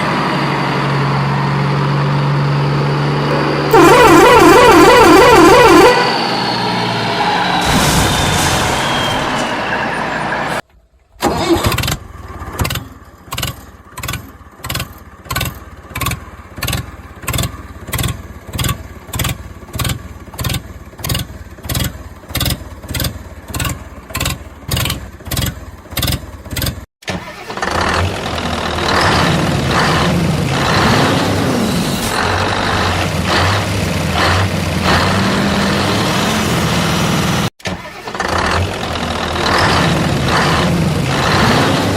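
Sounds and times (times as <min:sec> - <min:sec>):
regular engine pulsing: 0:00.0 - 0:06.3, 0:10.6 - 0:41.9
engine running steadily: 0:11.2 - 0:26.8.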